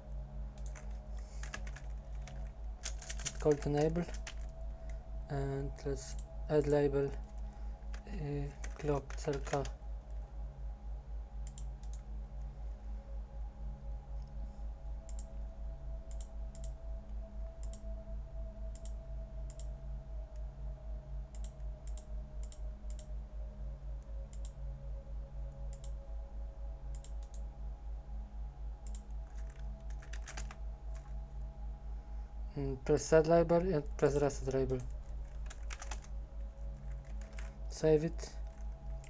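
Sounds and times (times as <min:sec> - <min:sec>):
low pulsing hum: 0:00.0 - 0:39.0
keyboard typing: 0:00.6 - 0:05.0, 0:06.1 - 0:09.8, 0:28.8 - 0:31.2, 0:33.9 - 0:36.1, 0:36.7 - 0:39.0.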